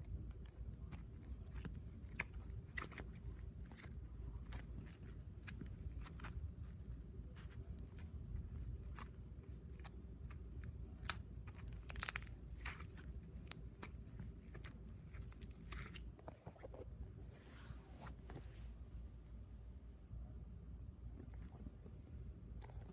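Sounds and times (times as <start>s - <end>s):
slime squelch: 0.0s - 18.3s.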